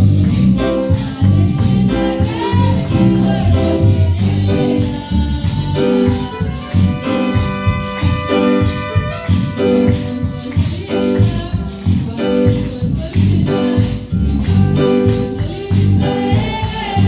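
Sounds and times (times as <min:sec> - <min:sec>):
praise song singing with accompaniment: 0:00.0 - 0:17.0.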